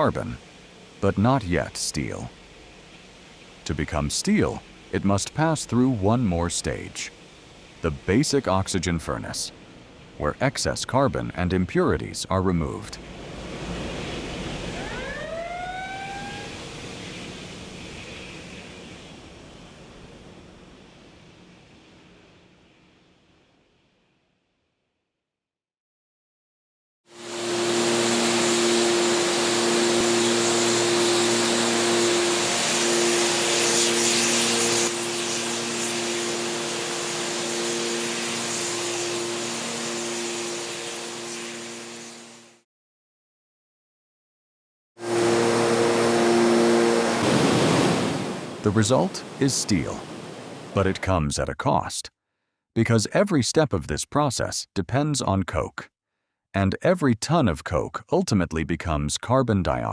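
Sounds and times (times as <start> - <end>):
steady hiss: 0.0 - 14.8, 29.1 - 42.5, 47.2 - 51.0
low tonal hum: 13.0 - 21.1, 45.0 - 48.4
rising pitched tone: 14.4 - 17.0, 45.0 - 48.1
machine hiss: 27.2 - 42.6.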